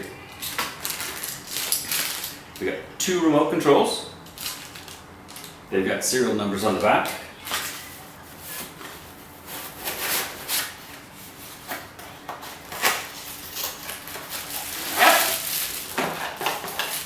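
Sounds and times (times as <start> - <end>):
packaging rustling: 0.3 - 2.7, 4.2 - 5.7, 6.8 - 17.0
box scraping: 12.7 - 17.0.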